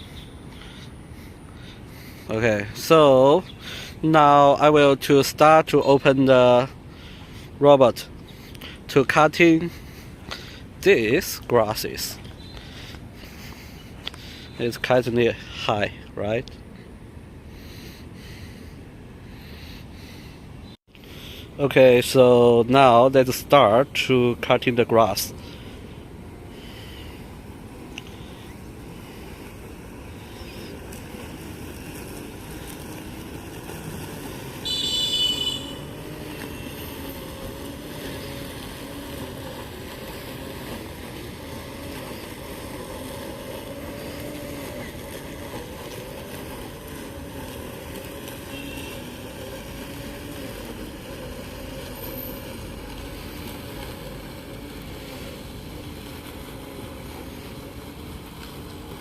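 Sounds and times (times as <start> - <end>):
lawn mower motor humming: 8.2 - 15.5, 20.9 - 59.0
short high-pitched tone: 34.7 - 35.8.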